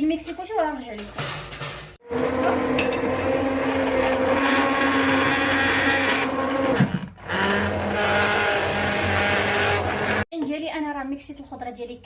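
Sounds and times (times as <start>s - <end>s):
electric blender running: 2.0s - 10.3s.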